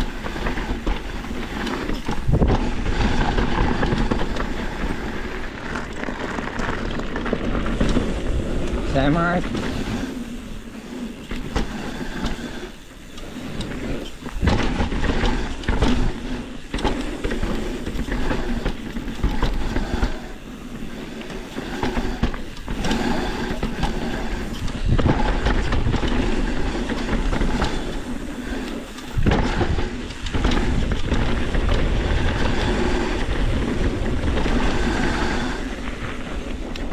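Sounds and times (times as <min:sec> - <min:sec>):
wind on microphone: 0:00.0 - 0:05.7, 0:21.5 - 0:36.9
bike tyres rumbling over rocks: 0:00.0 - 0:36.9.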